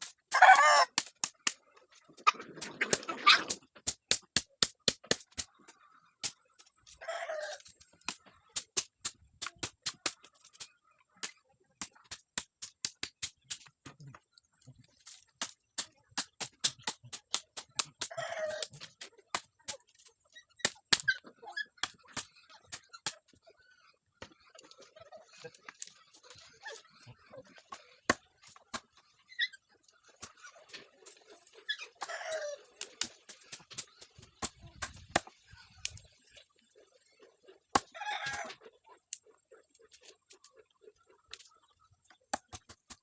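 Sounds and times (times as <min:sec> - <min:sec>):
chickens calling: 0:00.3 - 0:01.2, 0:05.4 - 0:10.7, 0:15.8 - 0:36.6, 0:37.4 - 0:42.2.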